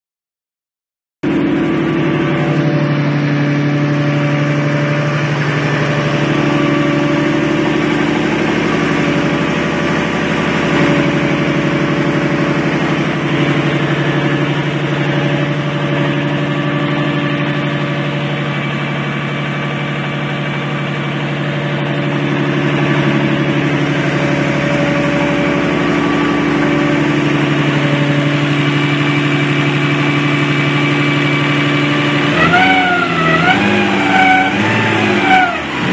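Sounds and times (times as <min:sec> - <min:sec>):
car engine idling: 0:01.2 - 0:35.9.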